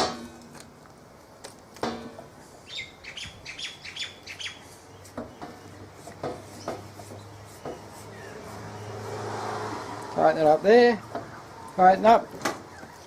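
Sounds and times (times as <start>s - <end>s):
small bird chirping: 2.6s - 5.8s.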